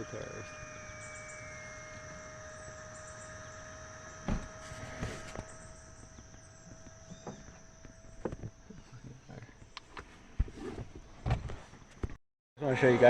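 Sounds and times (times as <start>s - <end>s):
electric air pump whining: 0.0s - 9.0s
dull thumps: 4.2s - 8.6s.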